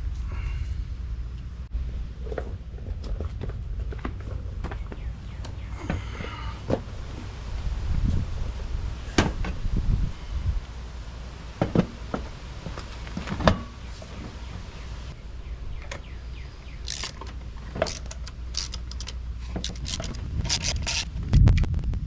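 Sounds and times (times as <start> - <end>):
tools and metal parts clinking: 16.8 - 21.1.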